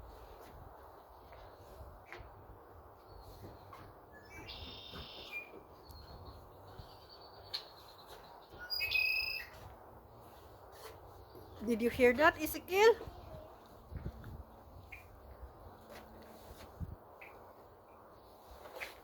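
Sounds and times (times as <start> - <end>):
faint thin whistle: 4.2 - 5.5
bird high-pitched cries: 8.6 - 9.6.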